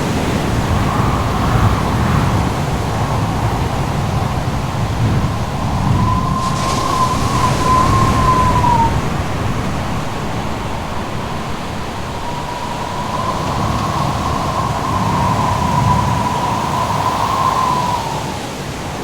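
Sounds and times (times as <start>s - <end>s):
howling wind: 0.0s - 19.0s
thin wavering whistle: 3.8s - 9.8s, 10.9s - 18.6s.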